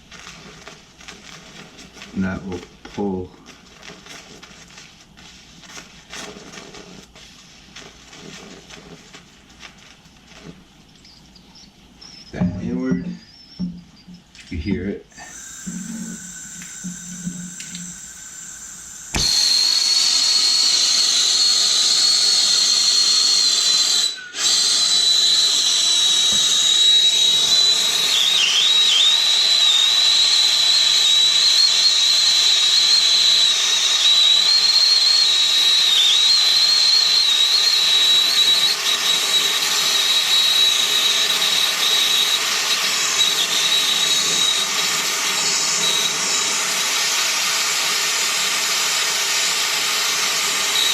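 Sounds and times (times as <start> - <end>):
torch flame hissing: 0.0 - 10.9, 15.1 - 50.9
high whistle: 15.2 - 47.4, 49.3 - 50.9.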